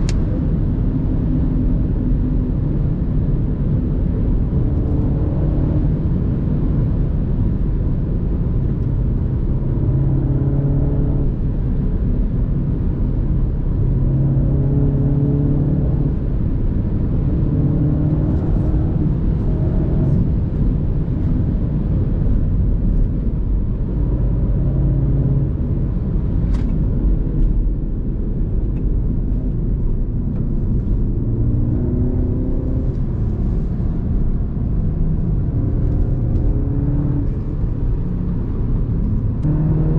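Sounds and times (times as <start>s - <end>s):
road and tyre rumble: 0.0s - 39.9s
car engine revving: 30.3s - 39.9s.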